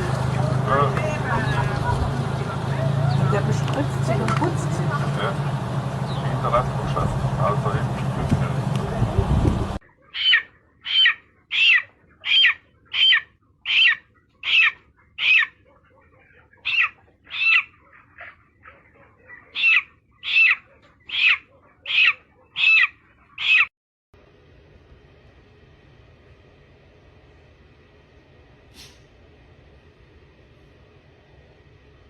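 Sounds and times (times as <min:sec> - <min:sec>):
animal calling in high calls: 0:10.0 - 0:23.7.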